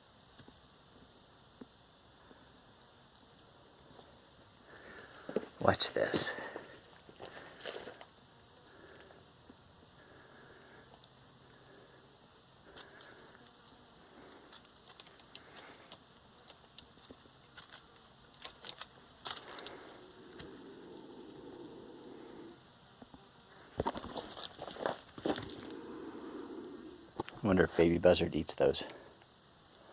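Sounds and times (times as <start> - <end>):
insect chorus drone: 0.0 - 29.9
faint clicks and rustles: 14.4 - 20.6.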